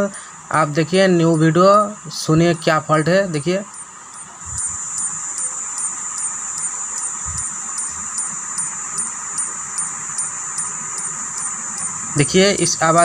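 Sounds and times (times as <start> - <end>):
high-pitched whine and hiss: 0.0 - 13.0
faint ticks: 3.7 - 12.3.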